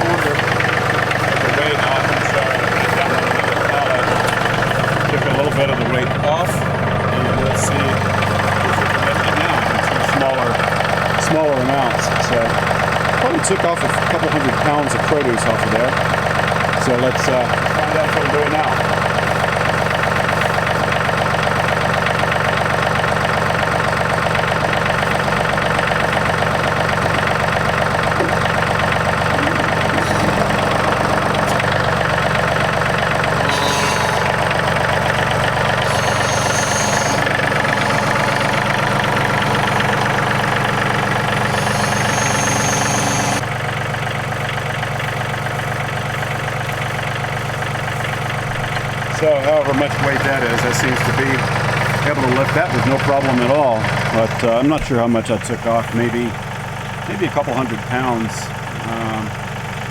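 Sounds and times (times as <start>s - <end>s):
tractor diesel engine running: 0.0s - 59.9s
high hissing: 29.3s - 34.6s, 35.7s - 38.7s, 41.3s - 43.4s.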